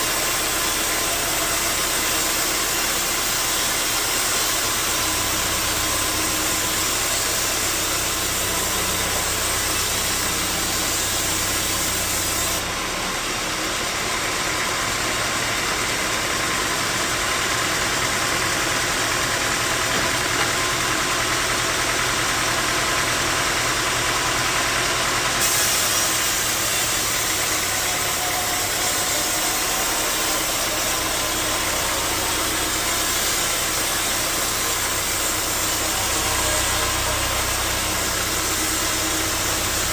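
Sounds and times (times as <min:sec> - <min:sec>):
sawmill machinery drone: 0:00.0 - 0:39.9.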